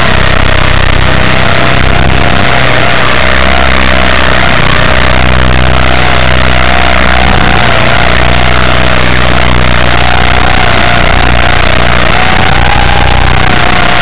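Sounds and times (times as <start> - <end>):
electric motor whine: 0.0 - 14.0
steady low hum: 0.0 - 14.0.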